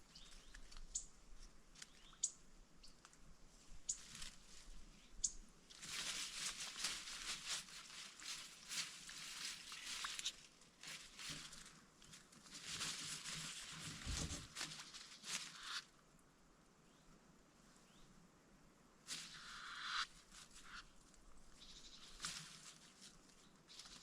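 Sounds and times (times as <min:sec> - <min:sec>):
dry rustling and crackling: 0:05.7 - 0:15.8, 0:21.9 - 0:24.0.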